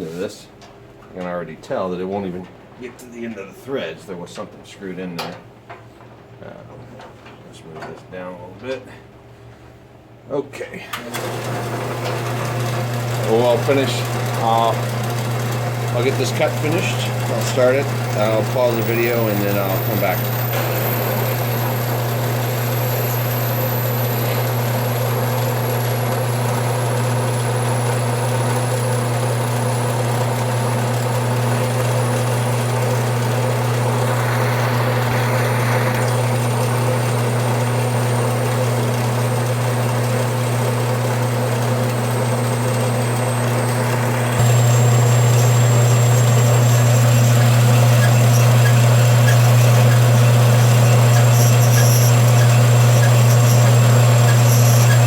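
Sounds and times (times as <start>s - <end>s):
band saw cutting metal: 11.2s - 55.0s.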